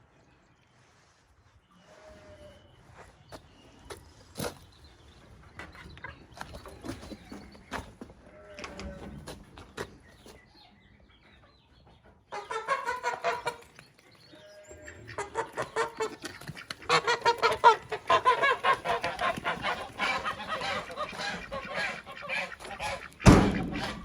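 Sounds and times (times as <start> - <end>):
chickens clucking: 3.3 - 24.0.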